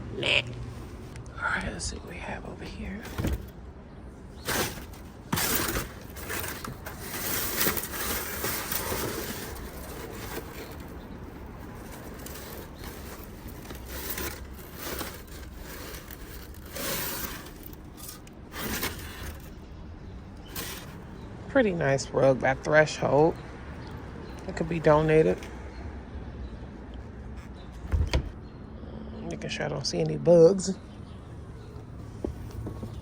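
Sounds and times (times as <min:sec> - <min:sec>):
rummaging through trash: 0:02.8 - 0:03.6, 0:04.3 - 0:19.6, 0:20.4 - 0:21.3
scraping: 0:03.0 - 0:03.6, 0:04.3 - 0:19.7, 0:20.4 - 0:21.3
rustling: 0:04.4 - 0:19.6, 0:20.4 - 0:21.2.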